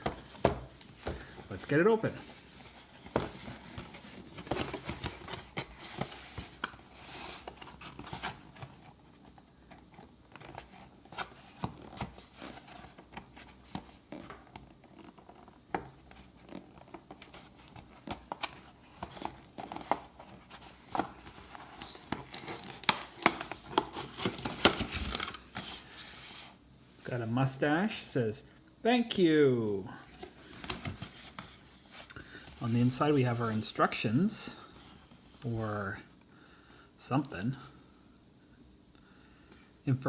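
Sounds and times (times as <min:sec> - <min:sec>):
cardboard box tearing and crinkling: 0:21.5 - 0:25.4.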